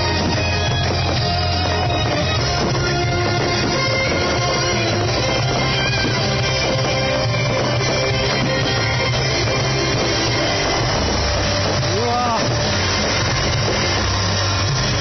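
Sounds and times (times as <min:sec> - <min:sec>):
rock music with guitar and drums: 0:00.0 - 0:15.0.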